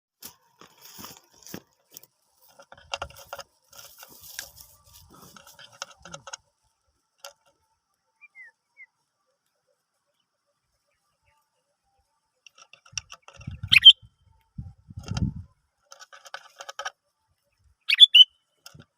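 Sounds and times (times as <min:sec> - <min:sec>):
clicking and rattling: 0:02.4 - 0:06.4, 0:07.2 - 0:07.6, 0:12.4 - 0:13.8, 0:15.0 - 0:17.0, 0:18.6 - 0:18.9
bird chirps falling in pitch: 0:13.7 - 0:14.0, 0:17.9 - 0:18.4.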